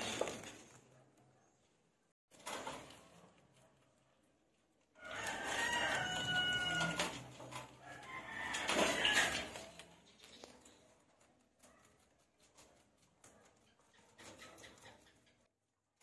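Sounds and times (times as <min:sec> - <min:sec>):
rooster crowing: 0:05.0 - 0:07.2, 0:07.8 - 0:09.5.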